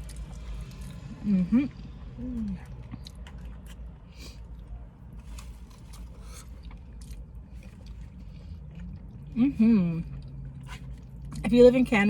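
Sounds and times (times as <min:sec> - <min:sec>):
food being chewed: 0:00.0 - 0:01.1, 0:01.8 - 0:11.5
low rumble: 0:00.0 - 0:05.7.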